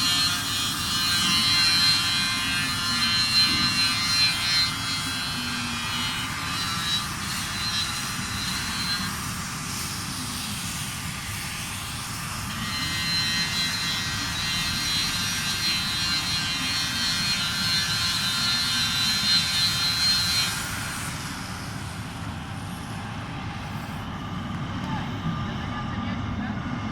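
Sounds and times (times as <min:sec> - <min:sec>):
machinery high whine: 0:00.0 - 0:26.9
machinery low rumble: 0:21.4 - 0:26.9.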